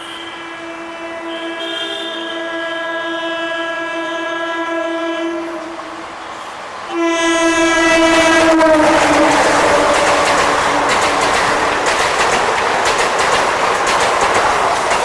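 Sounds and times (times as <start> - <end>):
train horn blasts: 0.0 - 6.0, 6.9 - 11.8
train wheels clattering on track: 7.5 - 15.0.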